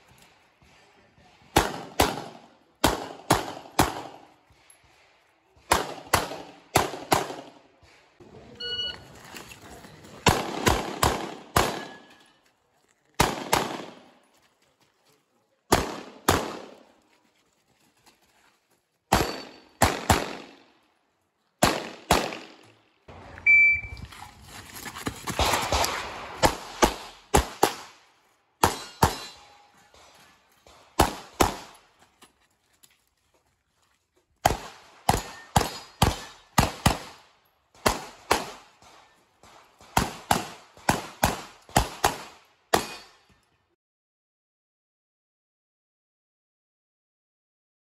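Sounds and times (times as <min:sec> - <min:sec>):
pistol shots: 0:01.4 - 0:04.4, 0:05.6 - 0:07.6, 0:10.2 - 0:12.1, 0:13.2 - 0:14.1, 0:15.7 - 0:16.8, 0:19.1 - 0:20.7, 0:21.6 - 0:22.7, 0:25.4 - 0:28.0, 0:28.6 - 0:31.8, 0:34.4 - 0:37.2, 0:37.8 - 0:43.1
short beep: 0:08.5 - 0:09.1, 0:23.4 - 0:24.1.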